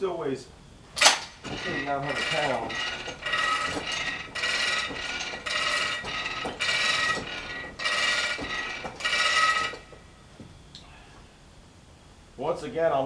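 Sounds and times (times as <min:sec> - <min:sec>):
metal ratchet clicking: 0:00.9 - 0:10.0.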